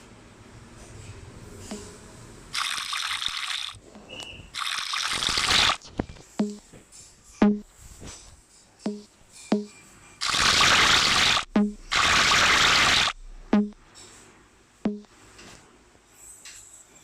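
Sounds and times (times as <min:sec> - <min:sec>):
liquid pouring: 0:02.6 - 0:03.8, 0:04.6 - 0:05.8.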